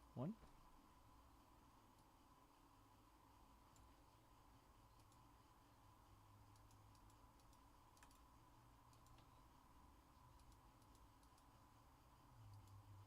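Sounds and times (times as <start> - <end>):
low electrical hum: 0.0 - 13.0
faint clicks: 3.7 - 4.0, 4.9 - 5.3, 6.4 - 8.3, 8.9 - 9.4, 10.3 - 11.6, 12.4 - 12.8.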